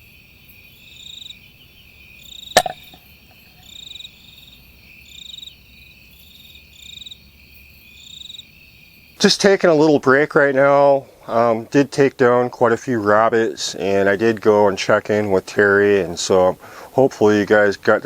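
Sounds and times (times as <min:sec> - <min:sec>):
crickets chirping: 0:00.0 - 0:10.3
sharp crack: 0:02.6 - 0:03.0.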